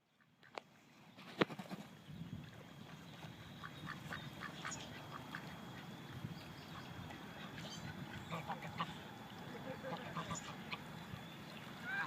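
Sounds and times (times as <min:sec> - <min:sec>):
faint bird calls: 0:02.9 - 0:12.0.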